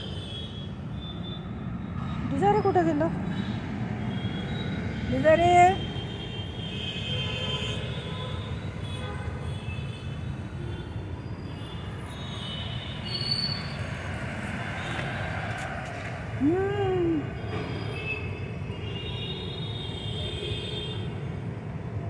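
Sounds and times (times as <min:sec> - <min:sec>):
traffic rumble: 0:00.0 - 0:22.0
faint high squeals: 0:11.2 - 0:15.8, 0:16.4 - 0:20.3.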